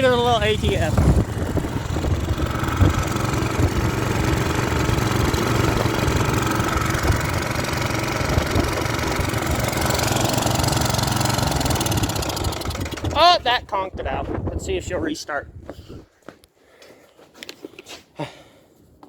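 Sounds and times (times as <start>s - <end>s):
pressure washer engine running: 0.0s - 13.5s.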